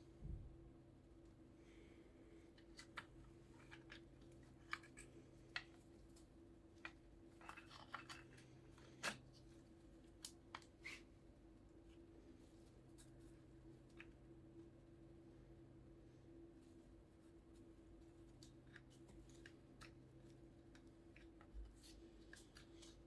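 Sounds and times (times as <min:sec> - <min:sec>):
faint steady hum: 0:00.0 - 0:23.0
faint clicks and light taps: 0:17.4 - 0:23.0.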